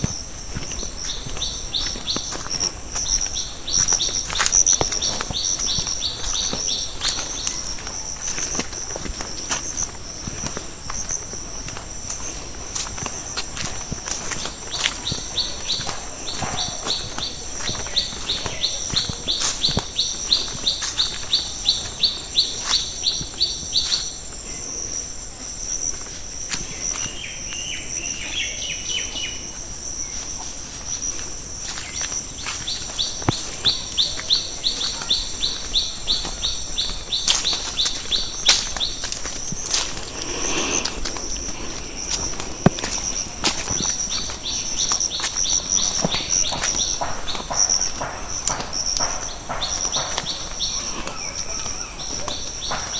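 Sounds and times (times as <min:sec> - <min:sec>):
high insect drone: 0:00.0 - 0:52.9
bird twittering: 0:31.7 - 0:52.9.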